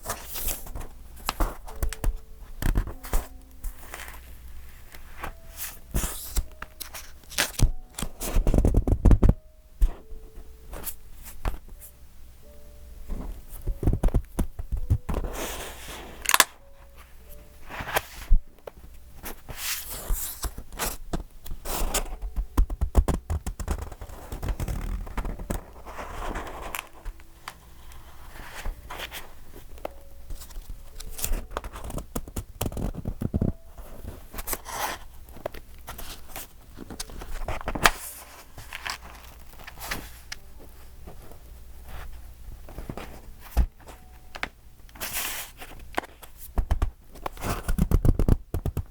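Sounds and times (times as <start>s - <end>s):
paper pages turning: 0.0s - 10.1s, 13.1s - 44.1s, 44.9s - 48.9s
pages thumping as they fall: 16.2s - 16.6s, 34.4s - 40.4s.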